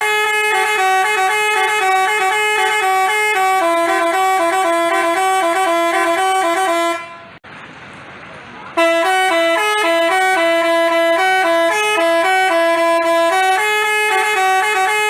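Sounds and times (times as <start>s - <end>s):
multi-tone bus horn melody: 0.0s - 7.4s, 8.8s - 15.0s.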